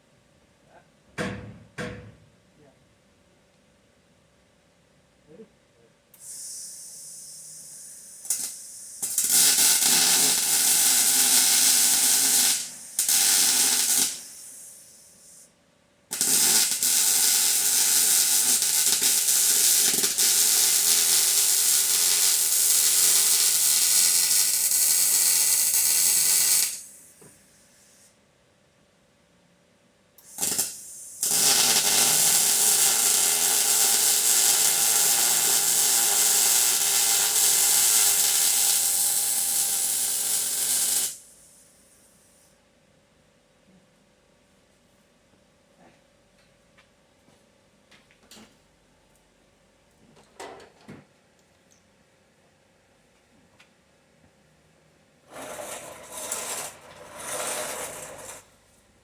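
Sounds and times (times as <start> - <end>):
welder crackling hiss: 6.2 - 15.5, 16.1 - 27.2, 30.2 - 41.7.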